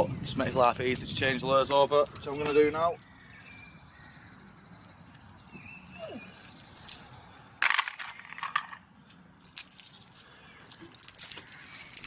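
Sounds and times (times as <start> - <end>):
fishing tackle metal clicks and rattles: 7.6 - 8.8, 9.4 - 12.0.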